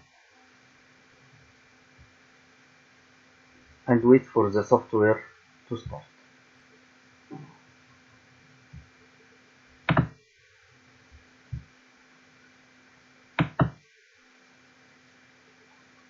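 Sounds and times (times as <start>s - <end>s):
faint steady hum: 0.0s - 16.0s
sharp knocks: 9.9s - 10.2s, 13.4s - 13.8s.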